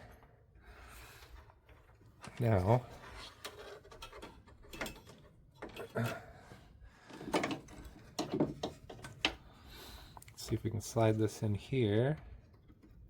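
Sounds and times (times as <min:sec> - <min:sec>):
tools knocking and scraping: 0:03.0 - 0:06.3, 0:07.0 - 0:09.4.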